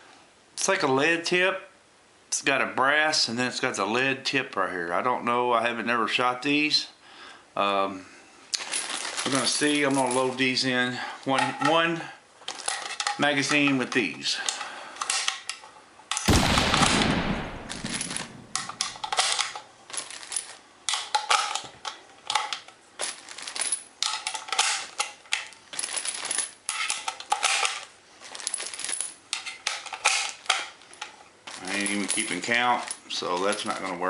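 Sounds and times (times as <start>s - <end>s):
cartridges clicking into magazine: 16.3s - 19.0s.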